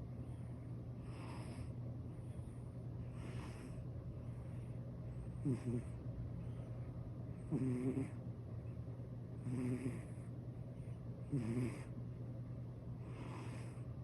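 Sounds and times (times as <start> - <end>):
cat snoring: 1.0 - 1.7, 3.0 - 3.8, 5.2 - 6.0, 7.4 - 8.2, 9.4 - 10.3, 11.2 - 11.9, 13.0 - 13.8.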